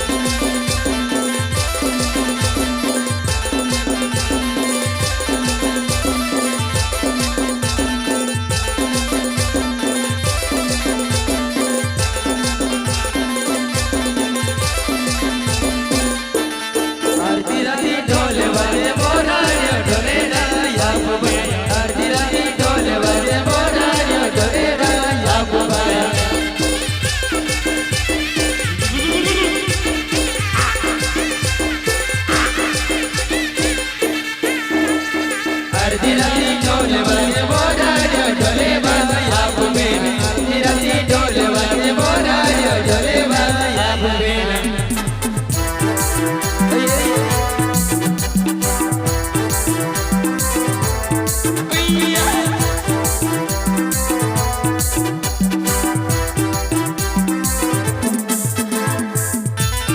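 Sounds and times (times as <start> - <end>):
busy melodic line: 0.0 - 59.9
steady drum beat: 0.0 - 59.9
wavering melody line: 28.4 - 33.4.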